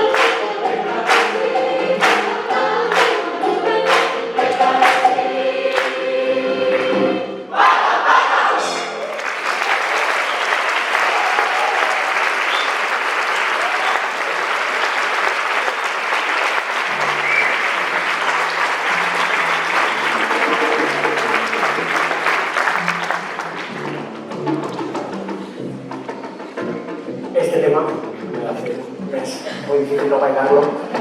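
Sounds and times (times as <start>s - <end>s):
audience applauding: 0.0s - 1.4s, 2.0s - 3.2s, 3.8s - 4.2s, 4.8s - 5.1s, 5.7s - 6.0s, 9.0s - 24.2s
whoops: 10.1s - 14.3s.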